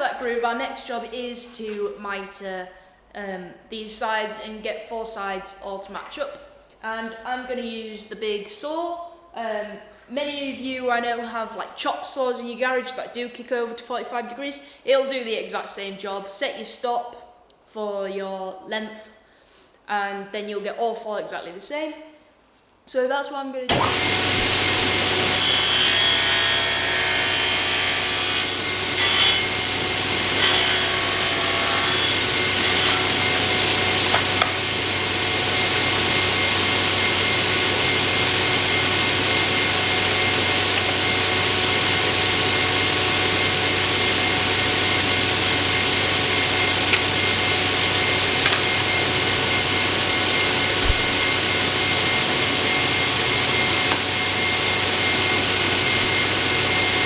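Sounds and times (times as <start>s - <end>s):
circular saw cutting wood: 23.7s - 57.0s.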